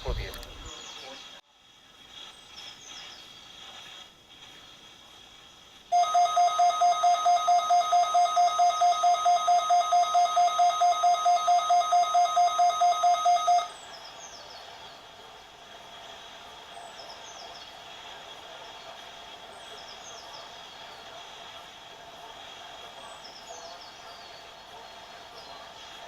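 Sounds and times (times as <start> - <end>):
faint radio hiss: 0.0 - 26.0
pulsed electronic alarm tone: 6.0 - 13.7.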